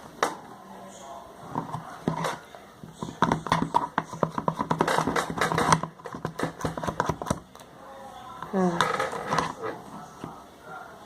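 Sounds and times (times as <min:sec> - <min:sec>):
rapid irregular clicks and knocks: 0:01.6 - 0:07.6.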